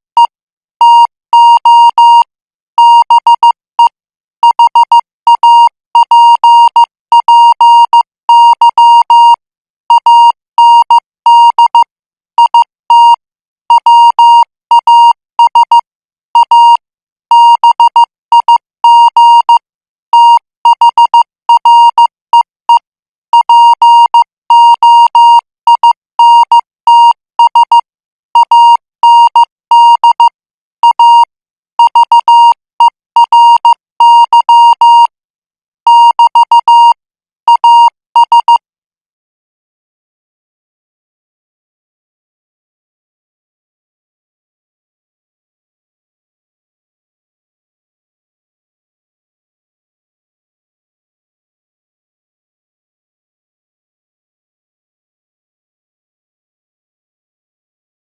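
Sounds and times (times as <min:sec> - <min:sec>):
morse code beeps: 0:00.2 - 0:19.6, 0:20.2 - 0:35.2, 0:35.9 - 0:38.6.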